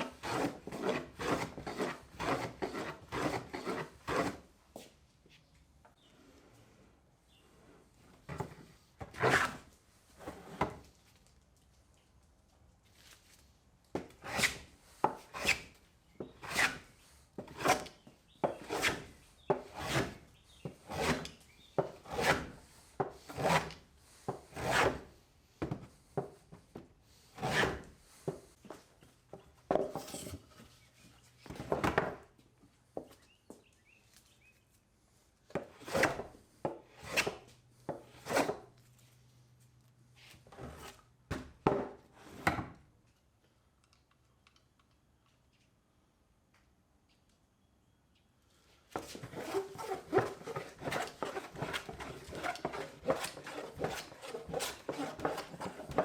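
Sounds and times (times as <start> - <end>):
hand tool strokes on wood: 48.9 - 56.0.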